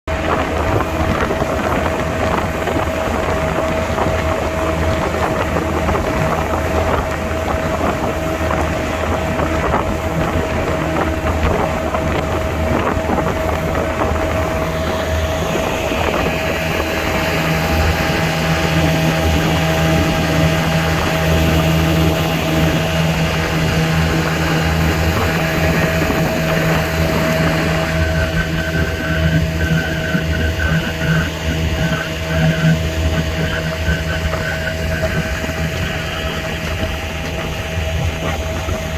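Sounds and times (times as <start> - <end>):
low hum: 0.0 - 38.9
moving vehicle running noise: 0.0 - 38.9
wind: 0.0 - 38.9
steady tone: 13.8 - 38.9.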